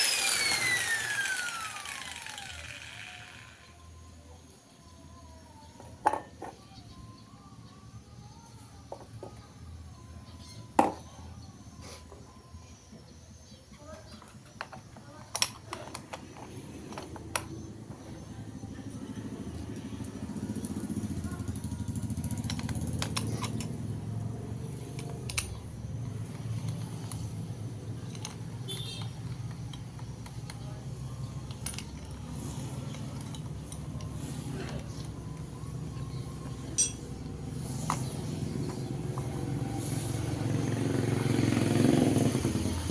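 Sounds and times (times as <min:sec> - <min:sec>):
metal parts clinking: 0:36.8 - 0:37.0.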